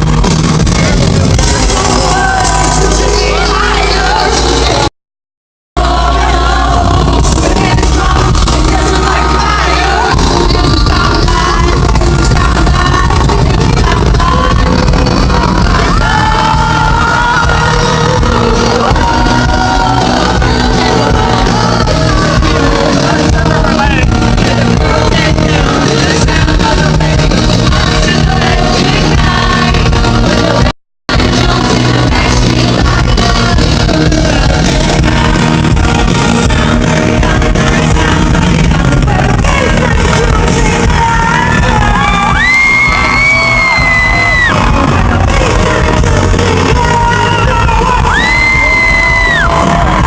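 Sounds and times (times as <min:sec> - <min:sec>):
live pop music over loudspeakers: 0:00.0 - 0:04.9, 0:05.8 - 0:50.0
voices singing: 0:05.8 - 0:50.0
crowd shouting along: 0:47.1 - 0:50.0.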